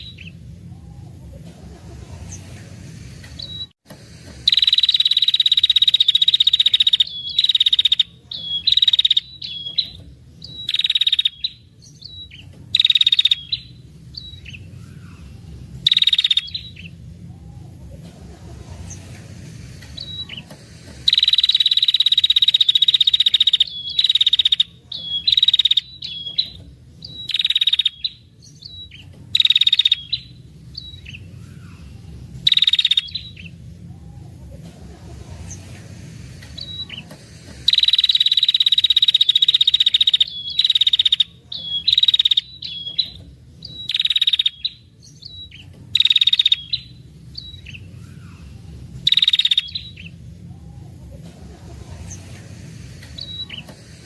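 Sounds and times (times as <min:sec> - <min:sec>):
bird rattling trill: 0:04.4 - 0:10.0, 0:20.0 - 0:26.5, 0:37.6 - 0:42.9.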